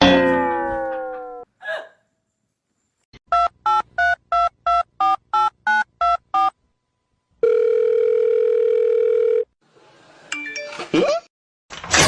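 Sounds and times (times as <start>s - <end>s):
steady telephone tone: 7.4s - 9.5s.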